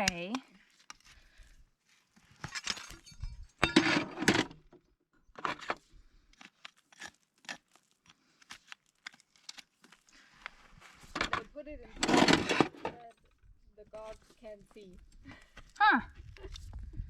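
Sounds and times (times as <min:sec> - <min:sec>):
tools scraping horse hoof: 0:02.3 - 0:04.5, 0:05.4 - 0:09.6, 0:12.0 - 0:13.1.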